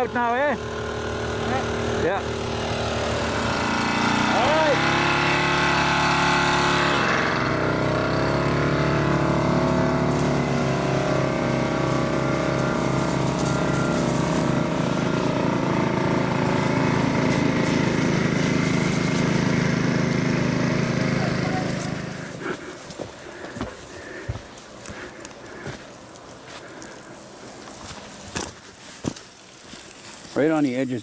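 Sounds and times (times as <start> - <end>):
engine running: 0.0 - 29.7.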